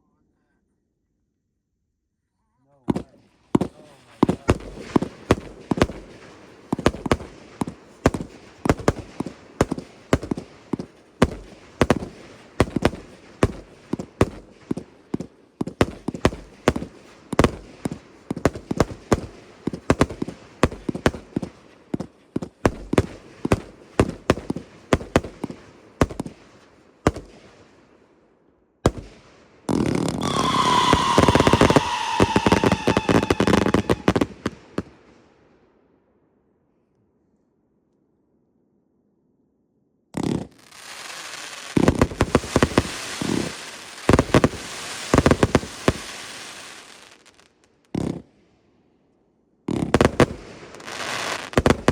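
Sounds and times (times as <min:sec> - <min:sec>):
firework cake shots and bursts: 0:02.9 - 0:27.6, 0:28.9 - 0:34.9, 0:40.2 - 0:48.4, 0:49.7 - 0:51.9
whistling fireworks: 0:02.9 - 0:27.8, 0:28.9 - 0:35.3, 0:40.2 - 0:48.2, 0:49.7 - 0:51.9.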